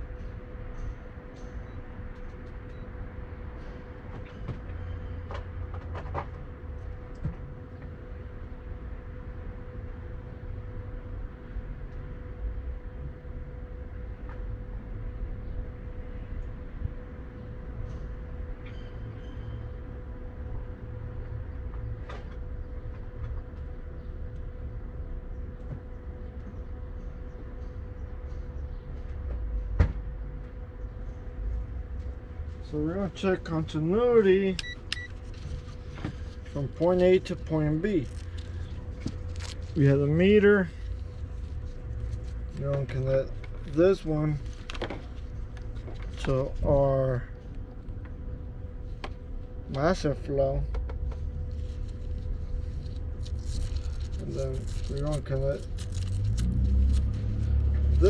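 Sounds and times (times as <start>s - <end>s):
constant hum: 0.0s - 58.0s
low rumble: 34.6s - 49.6s.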